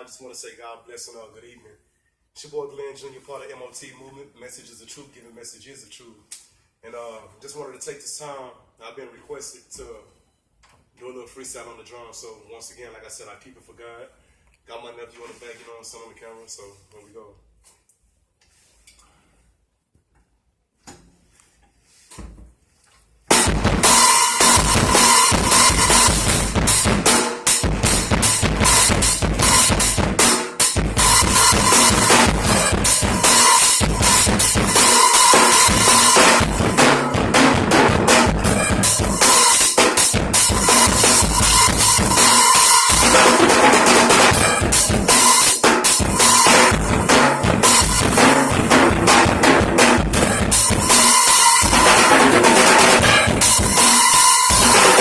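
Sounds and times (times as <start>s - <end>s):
drum kit solo: 23.3s - 55.0s
cymbal wash: 23.4s - 43.4s, 44.3s - 52.3s, 53.0s - 55.0s.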